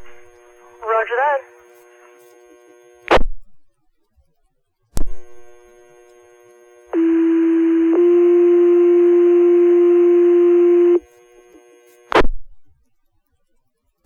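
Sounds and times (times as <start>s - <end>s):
radio static crackle: 0.0s - 3.2s, 5.0s - 12.3s
two-tone radio paging tones: 6.8s - 12.2s.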